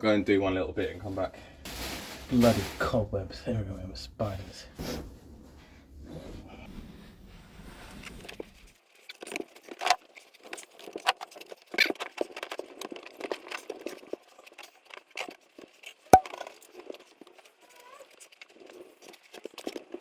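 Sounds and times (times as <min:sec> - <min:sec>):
rustling of insulation: 0:00.7 - 0:15.2.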